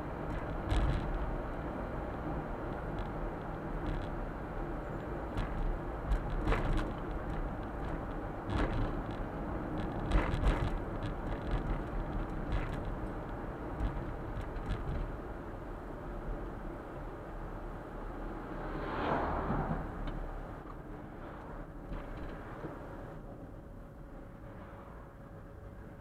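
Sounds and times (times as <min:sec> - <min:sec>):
truck engine and tyre noise: 0:00.0 - 0:26.0
sharp knocks and rattles: 0:00.2 - 0:01.5, 0:02.1 - 0:04.3, 0:05.0 - 0:15.2.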